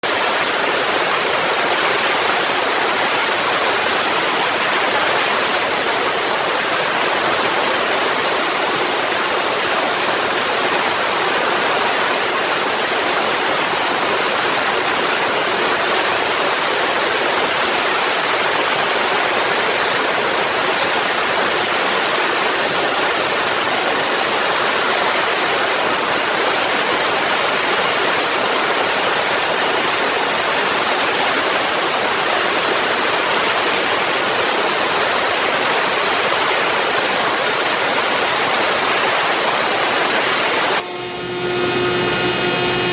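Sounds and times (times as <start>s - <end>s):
thin high whine: 0.1s - 42.9s
router cutting panel: 38.9s - 42.9s.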